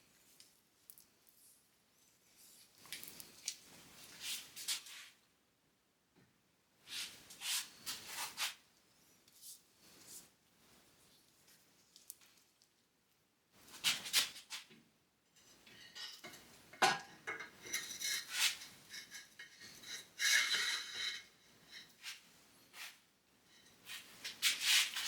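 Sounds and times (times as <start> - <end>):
metal scraping and clinking: 15.4 - 22.2.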